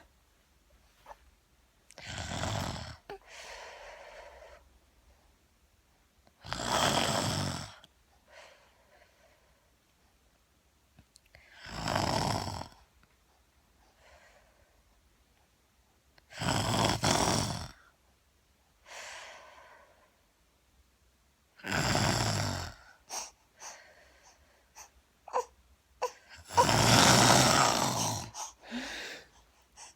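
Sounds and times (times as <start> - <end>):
woman snoring: 2.0 - 3.2, 6.4 - 7.8, 11.6 - 12.8, 16.3 - 17.8, 21.6 - 23.1, 25.3 - 29.9
quiet breath: 3.0 - 6.4, 8.0 - 10.4, 12.8 - 16.3, 17.7 - 20.5, 22.7 - 25.4, 26.0 - 29.9.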